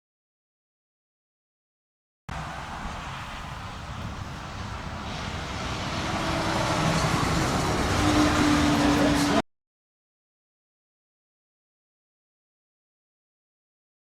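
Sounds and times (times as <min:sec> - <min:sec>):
engine rumble of passing vehicle: 0:02.3 - 0:09.4.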